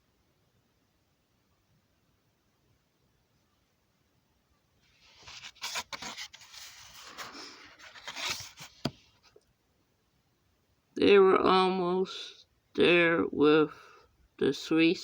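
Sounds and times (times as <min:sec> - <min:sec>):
rustling and scraping: 0:04.8 - 0:09.4.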